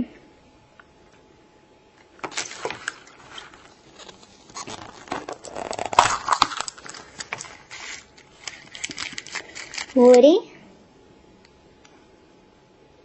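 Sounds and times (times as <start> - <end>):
plastic rustling and crinkling: 2.2 - 10.3.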